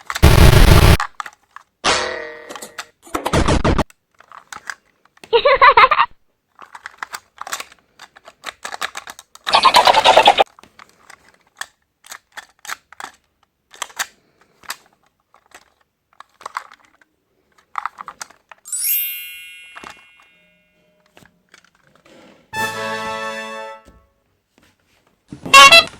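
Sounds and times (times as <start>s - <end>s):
plastic toys clicking and clattering: 0.0s - 0.2s, 1.0s - 1.8s, 2.5s - 18.8s, 19.7s - 20.3s, 21.0s - 22.4s
bright ringing chime: 18.7s - 21.0s.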